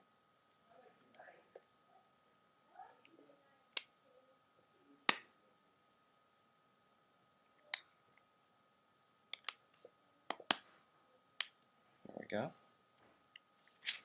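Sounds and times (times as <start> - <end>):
small sharp clicks and taps: 9.3 - 10.7, 11.4 - 11.6.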